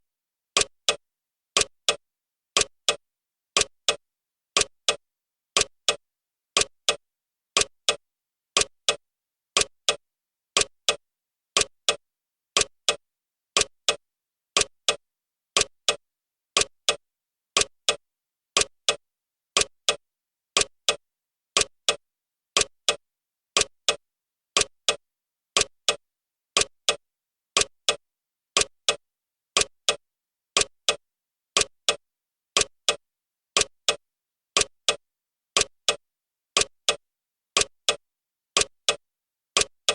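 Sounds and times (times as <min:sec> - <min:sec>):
clock ticking: 0:00.6 - 0:01.0, 0:01.6 - 0:02.0, 0:02.6 - 0:03.0, 0:03.6 - 0:04.0, 0:04.6 - 0:05.0, 0:05.6 - 0:06.0, 0:06.6 - 0:07.0, 0:07.6 - 0:08.0, 0:08.6 - 0:09.0, 0:09.6 - 0:10.0, 0:10.6 - 0:11.0, 0:11.6 - 0:12.0, 0:12.6 - 0:13.0, 0:13.6 - 0:14.0, 0:14.6 - 0:15.0, 0:15.6 - 0:16.0, 0:16.6 - 0:17.0, 0:17.6 - 0:18.0, 0:18.6 - 0:19.0, 0:19.6 - 0:20.0, 0:20.6 - 0:21.0, 0:21.6 - 0:22.0, 0:22.6 - 0:23.0, 0:23.6 - 0:24.0, 0:24.6 - 0:25.0, 0:25.6 - 0:26.0, 0:26.6 - 0:27.0, 0:27.6 - 0:28.0, 0:28.6 - 0:29.0, 0:29.6 - 0:30.0, 0:30.6 - 0:31.0, 0:31.6 - 0:32.0, 0:32.6 - 0:33.0, 0:33.6 - 0:34.0, 0:34.6 - 0:35.0, 0:35.6 - 0:36.0, 0:36.6 - 0:37.0, 0:37.6 - 0:38.0, 0:38.6 - 0:39.0, 0:39.6 - 0:39.9.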